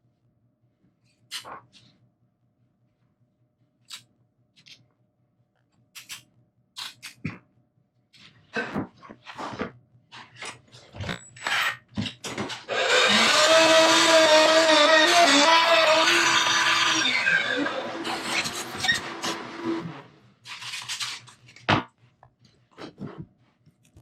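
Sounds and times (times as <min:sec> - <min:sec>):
power tool humming: 0:12.7 - 0:20.1.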